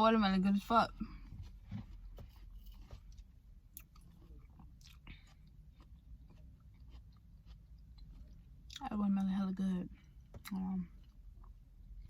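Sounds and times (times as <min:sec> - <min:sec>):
wet chewing: 0:01.9 - 0:08.9.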